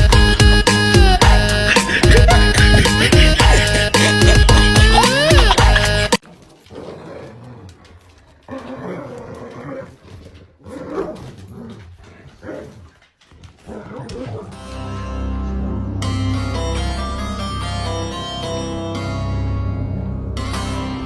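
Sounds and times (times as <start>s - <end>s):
music: 0.0s - 6.2s, 14.5s - 21.0s.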